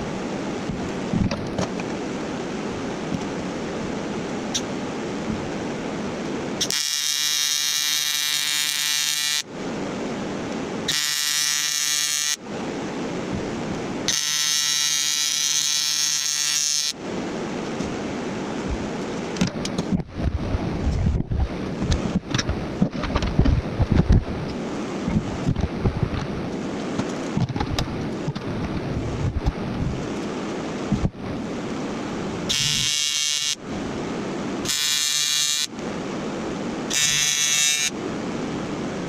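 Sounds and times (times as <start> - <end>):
electric tool buzzing: 6.6 - 9.4, 10.9 - 12.4, 14.1 - 17.0, 32.5 - 33.6, 34.7 - 35.7, 36.9 - 37.9.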